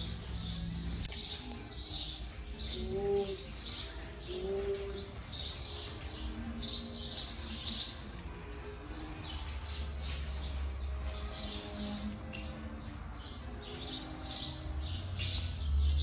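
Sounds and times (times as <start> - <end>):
birds chirping: 0.0 - 16.0
bird cooing: 2.7 - 3.6, 4.3 - 5.2.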